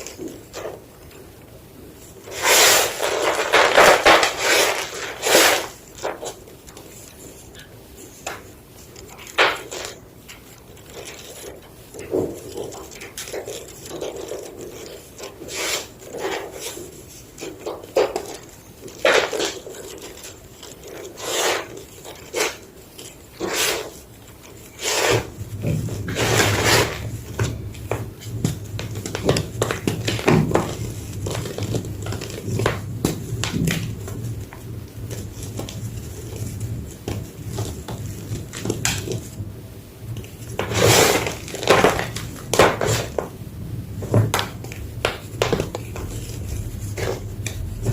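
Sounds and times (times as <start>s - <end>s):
low steady hum: 0.0s - 47.9s
chalk being crushed: 2.2s - 34.2s, 40.5s - 43.3s.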